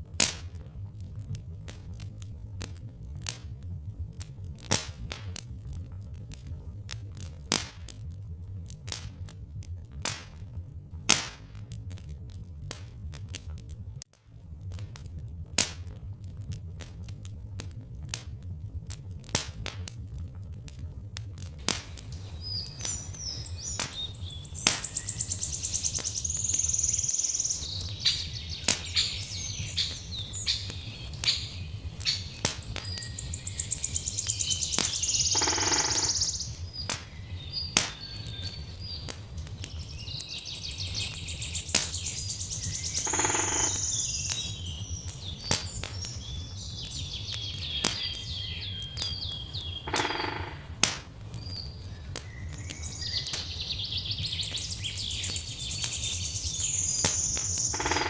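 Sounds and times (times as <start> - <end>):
log fire crackling and popping: 0.0 - 58.0
songbirds singing: 21.6 - 58.0
harsh bird calls: 21.7 - 58.0.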